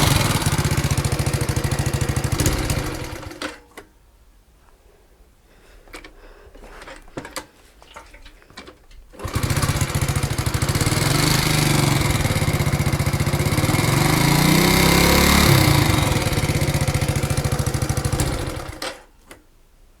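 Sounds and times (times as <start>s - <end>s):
moped engine knocking: 0.0s - 3.4s, 9.2s - 18.8s.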